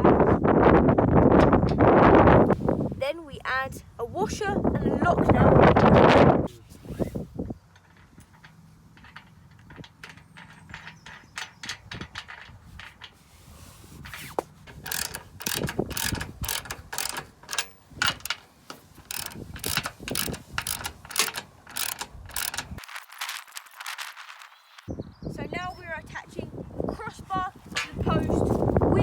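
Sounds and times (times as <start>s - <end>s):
ratchet spanner clicking: 14.7s - 22.8s.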